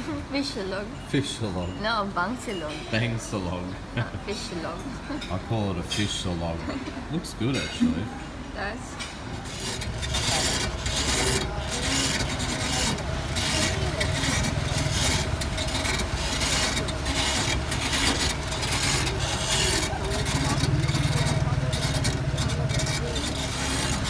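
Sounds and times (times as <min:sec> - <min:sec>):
faint voices: 0:00.0 - 0:24.0
engine running: 0:09.2 - 0:24.0.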